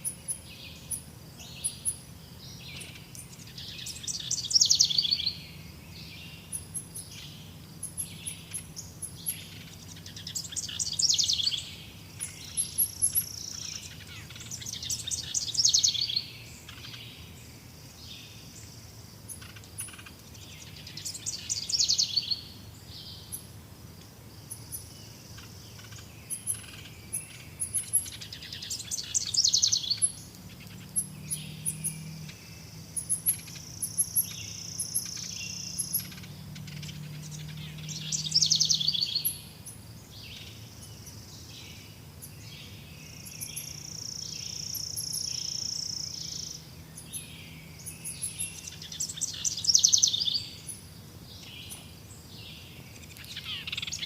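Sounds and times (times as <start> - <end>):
bird trilled song: 0.0 - 17.4, 19.3 - 23.5, 24.5 - 54.0
thin high bird chirps: 6.5 - 17.0, 24.6 - 39.4, 52.9 - 54.0.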